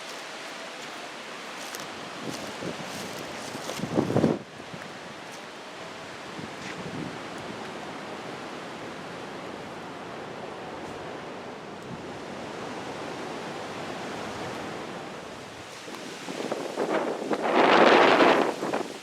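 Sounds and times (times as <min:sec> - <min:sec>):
hurricane wind and rain: 0:00.0 - 0:19.0.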